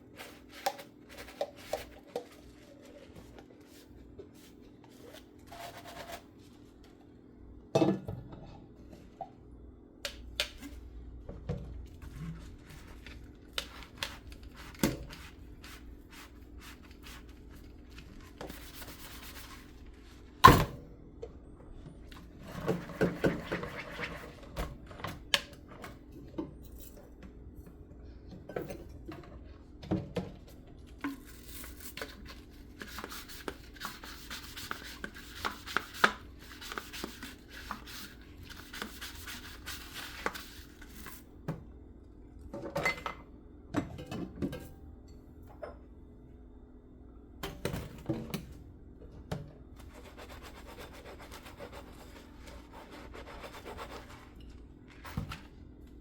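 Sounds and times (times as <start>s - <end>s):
faint steady hum: 0.0s - 56.0s
sponge scrubbing: 31.4s - 41.1s, 49.9s - 54.4s.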